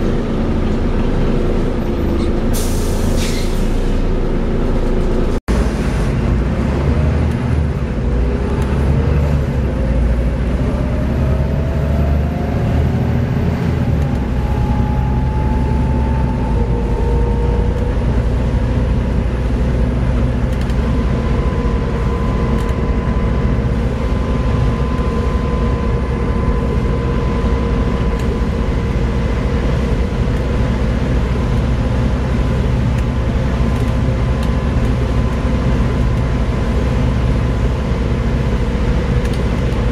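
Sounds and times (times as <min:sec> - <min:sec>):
bus diesel engine running: 0:00.0 - 0:39.9
driveline whine: 0:21.0 - 0:32.0.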